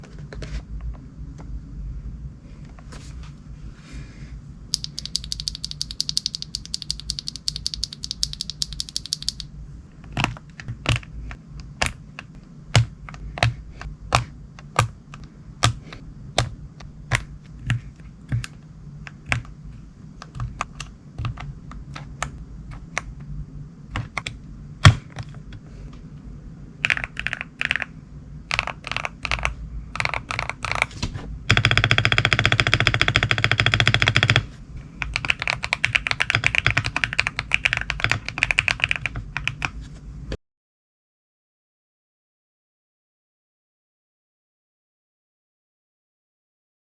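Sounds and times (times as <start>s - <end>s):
mechanical keyboard typing: 4.8s - 9.5s, 26.8s - 27.9s, 28.5s - 30.9s, 31.5s - 39.8s.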